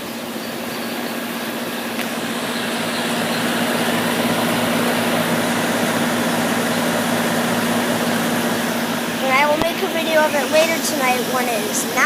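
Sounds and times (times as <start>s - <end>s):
compressor hum: 0.0s - 12.0s
fan rushing: 0.0s - 12.0s.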